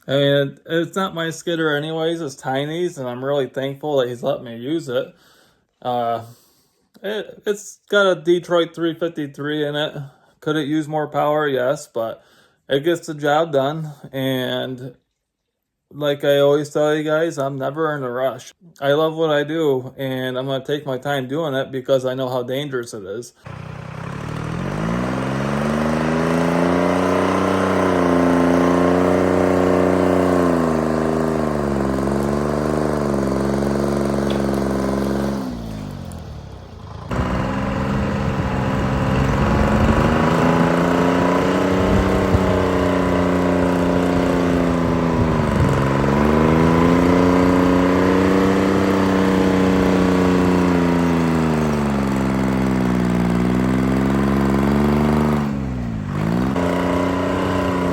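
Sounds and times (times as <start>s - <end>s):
diesel engine revving: 23.4s - 57.9s.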